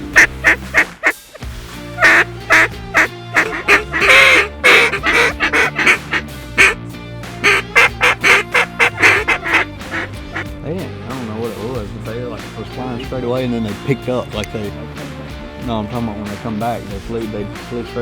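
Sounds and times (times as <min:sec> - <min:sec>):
ducks quacking: 0:00.0 - 0:01.4, 0:02.0 - 0:06.8, 0:07.4 - 0:10.4
geese honking: 0:00.0 - 0:01.4, 0:02.0 - 0:06.8, 0:07.4 - 0:10.4.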